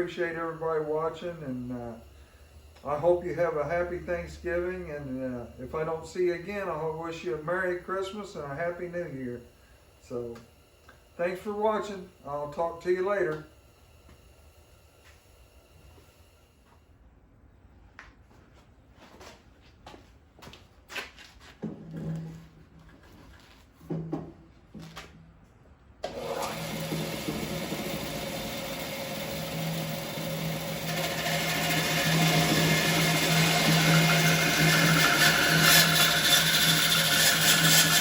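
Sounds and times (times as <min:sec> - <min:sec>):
bandsaw blade cutting wood: 0:26.0 - 0:38.0
bandsaw running: 0:26.0 - 0:38.0.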